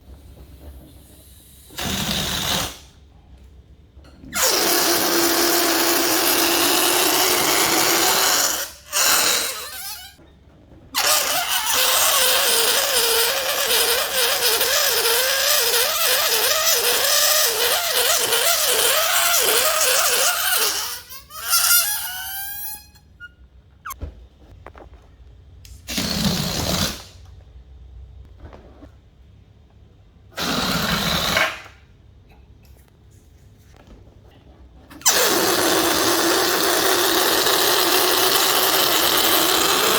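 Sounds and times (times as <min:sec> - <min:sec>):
balloon air hissing and squealing: 0:00.2 - 0:03.1, 0:04.3 - 0:10.2, 0:11.0 - 0:24.0, 0:25.9 - 0:27.2, 0:30.4 - 0:31.7, 0:35.0 - 0:39.9
faint squeaks and taps: 0:09.6 - 0:25.8.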